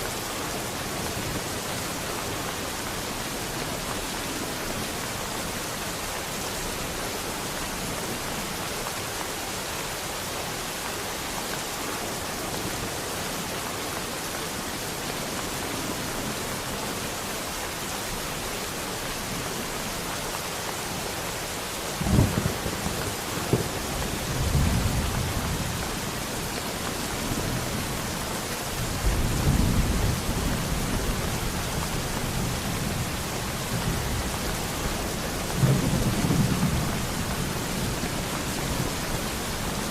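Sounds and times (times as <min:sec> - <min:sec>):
steady rain: 0:00.0 - 0:39.9
thunder crack and rumbling: 0:22.0 - 0:25.8.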